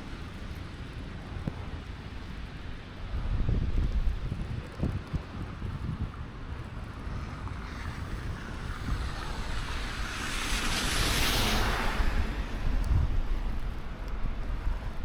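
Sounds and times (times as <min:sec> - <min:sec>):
wind buffeting microphone: 0:00.0 - 0:15.0
tyres hissing on slush: 0:06.9 - 0:12.8.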